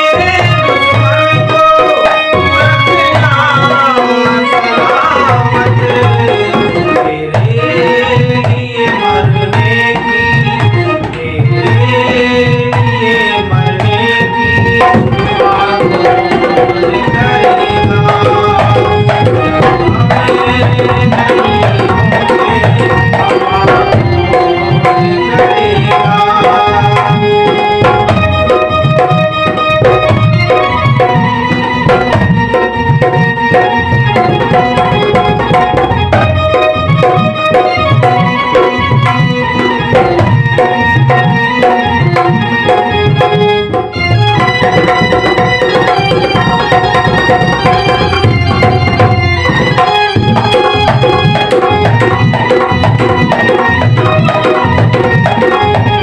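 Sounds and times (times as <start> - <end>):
tabla playing rhythmic pattern: 0.0 - 56.0
melodic instrument with gliding notes: 13.0 - 56.0.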